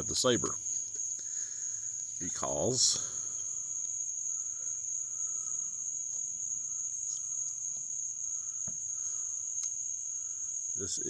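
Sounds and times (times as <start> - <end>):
crickets trilling: 0.0 - 11.0
faint clicks: 9.6 - 9.8.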